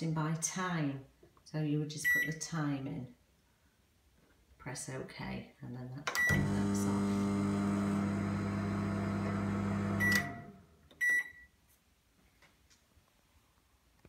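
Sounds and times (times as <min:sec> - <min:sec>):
microwave beeps: 0:02.0 - 0:02.3, 0:06.2 - 0:07.2, 0:09.6 - 0:11.5
microwave humming: 0:06.2 - 0:10.7.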